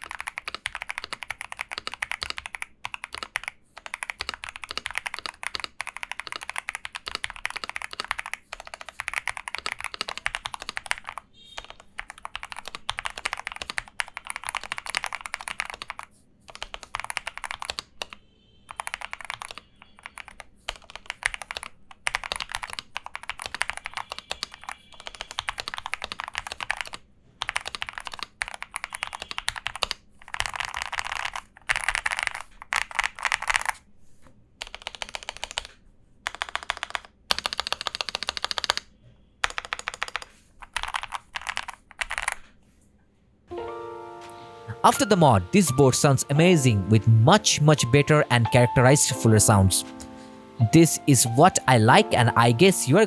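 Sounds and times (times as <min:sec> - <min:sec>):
mechanical keyboard typing: 0:00.0 - 0:33.8, 0:34.6 - 0:38.8, 0:39.4 - 0:42.4.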